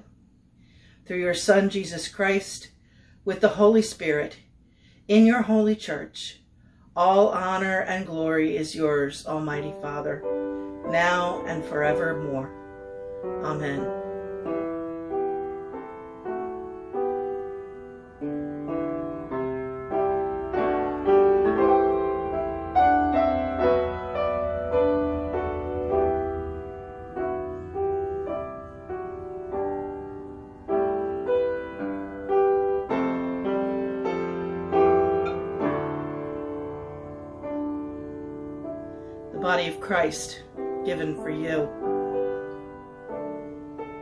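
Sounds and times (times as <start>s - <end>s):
slow gentle piano piece: 8.3s - 44.0s.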